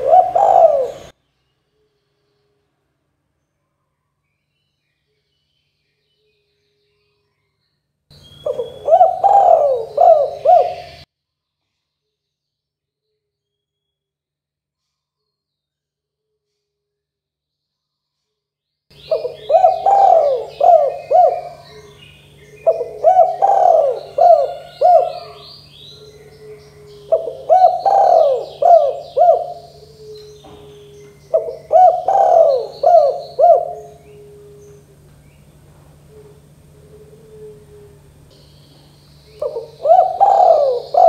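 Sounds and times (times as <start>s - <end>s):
dove cooing: 0.0s - 1.1s, 8.4s - 11.0s, 19.0s - 41.0s
small birds chirping: 0.0s - 2.6s, 3.3s - 12.6s, 18.9s - 41.0s.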